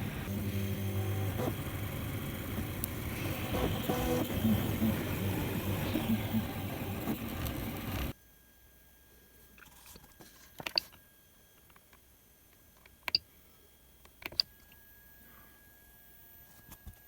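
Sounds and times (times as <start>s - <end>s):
stepper motors whining: 0.0s - 8.2s
steady low hum: 0.0s - 16.0s.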